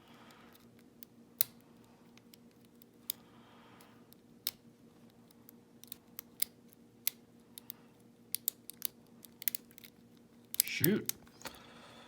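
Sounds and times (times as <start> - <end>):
lock pick metallic clicks: 5.8 - 9.9.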